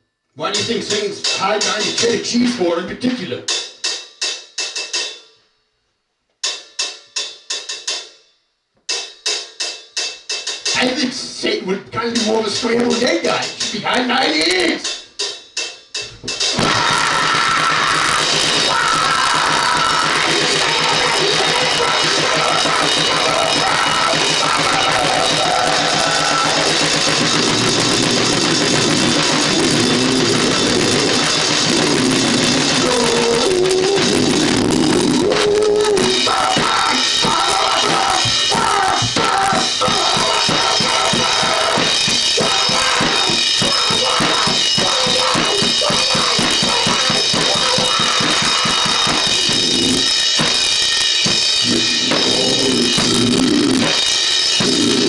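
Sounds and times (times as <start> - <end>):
drum kit pounding: 0.4 - 5.2, 8.9 - 55.0
distorted guitar noise: 16.2 - 55.0.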